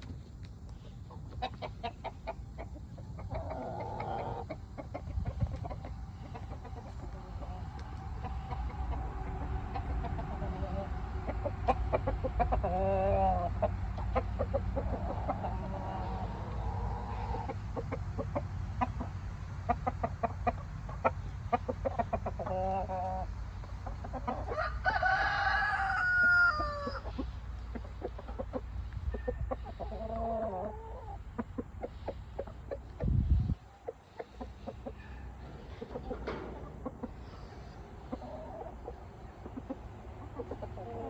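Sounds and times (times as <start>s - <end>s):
steady low hum: 0.0s - 22.5s, 26.8s - 40.9s
chickens clucking: 0.0s - 41.0s
rooster crowing: 24.5s - 27.0s.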